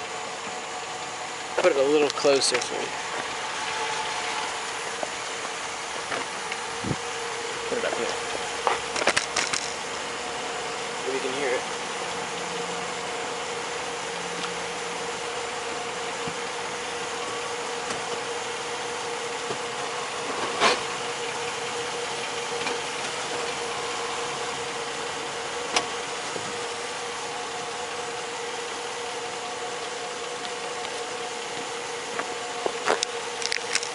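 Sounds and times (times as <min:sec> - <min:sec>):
car engine idling: 0:00.0 - 0:33.9
loud drivetrain clunk: 0:19.1 - 0:28.1.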